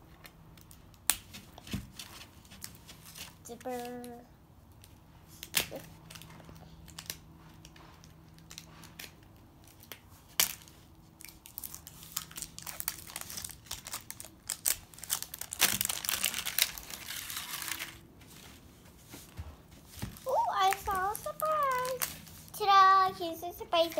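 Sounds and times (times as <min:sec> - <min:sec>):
plastic wrapping crinkling and tearing: 0:04.8 - 0:18.1, 0:19.9 - 0:22.8.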